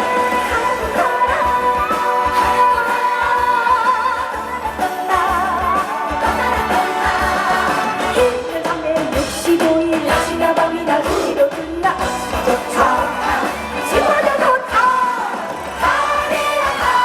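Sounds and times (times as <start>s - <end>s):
amplified backing music: 0.0s - 17.0s
woman singing with vibrato: 0.0s - 17.0s.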